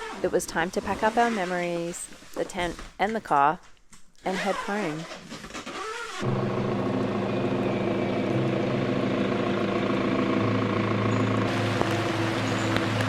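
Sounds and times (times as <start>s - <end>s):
vehicle engine running: 6.2s - 13.0s.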